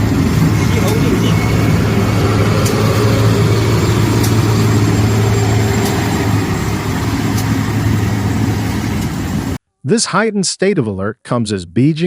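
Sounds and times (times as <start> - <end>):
vehicle engine running: 0.0 - 9.6.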